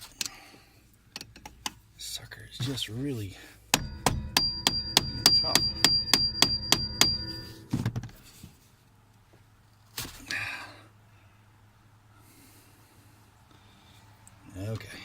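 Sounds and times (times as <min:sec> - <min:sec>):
hammer blows on metal: 0:03.7 - 0:07.8
sharp knock with rattle: 0:03.7 - 0:08.1
dull thunk: 0:03.8 - 0:08.2.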